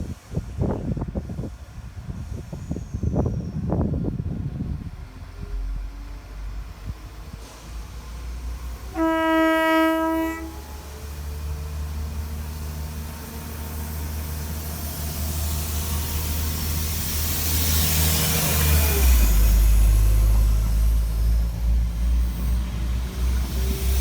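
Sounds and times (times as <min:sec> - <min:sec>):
train rumble and rail noise: 0:00.0 - 0:24.0
train horn: 0:08.9 - 0:10.8.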